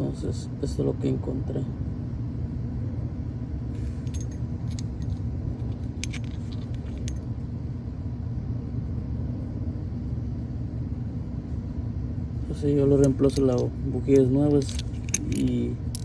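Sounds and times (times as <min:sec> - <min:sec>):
steady low rumble: 0:02.2 - 0:16.0
metal spark plugs clinking: 0:03.8 - 0:07.3, 0:12.9 - 0:16.0.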